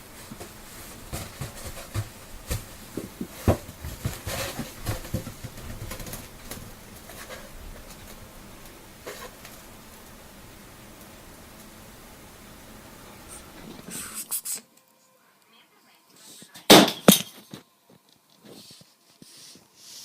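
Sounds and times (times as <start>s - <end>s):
soft taps and thumps: 0.2s - 8.2s.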